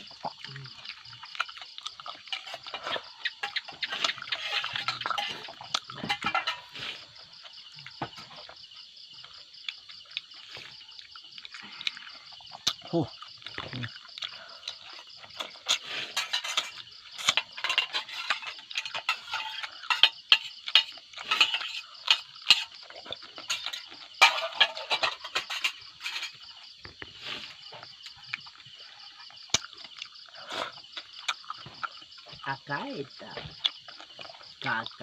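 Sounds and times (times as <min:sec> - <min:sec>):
insects chirring: 0:00.0 - 0:35.0
dishes and utensils clinking: 0:02.3 - 0:07.0, 0:15.4 - 0:26.4.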